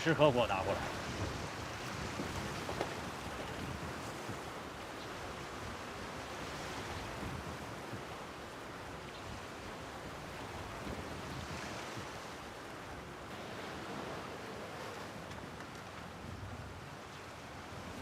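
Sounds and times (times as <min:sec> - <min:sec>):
rushing water: 0:00.0 - 0:18.0
wind: 0:00.0 - 0:18.0.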